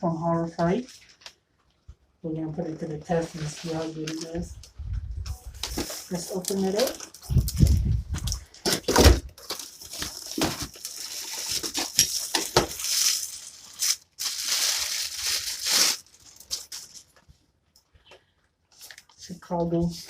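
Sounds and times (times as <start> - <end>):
cardboard and plastic rustling: 3.1 - 17.5.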